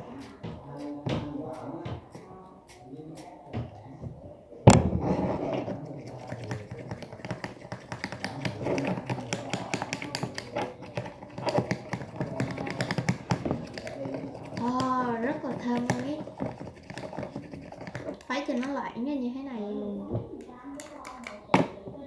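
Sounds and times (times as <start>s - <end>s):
stirrer clicking in liquid soap: 4.7s - 19.0s, 20.4s - 22.0s.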